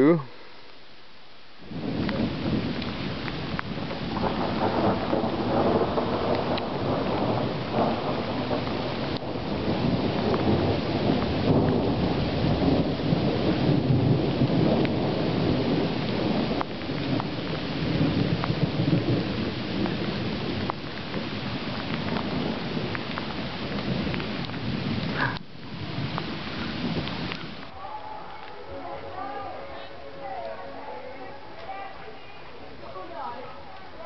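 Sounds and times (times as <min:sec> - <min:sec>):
raindrops ticking nearby: 0:00.0 - 0:28.7, 0:31.5 - 0:34.0
heavy rain falling: 0:00.0 - 0:34.0
thunder rumbling: 0:01.6 - 0:34.0.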